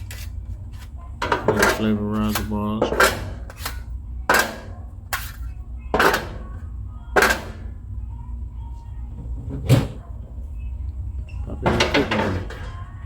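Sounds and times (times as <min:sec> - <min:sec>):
steady low hum: 0:00.0 - 0:13.0
metal bars clanking into place: 0:01.2 - 0:04.7, 0:11.6 - 0:12.8.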